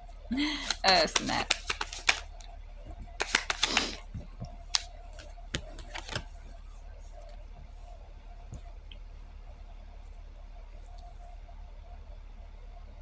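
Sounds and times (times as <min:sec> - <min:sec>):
faint steady hum: 0:00.0 - 0:13.0
objects clicking and tapping: 0:00.4 - 0:06.3.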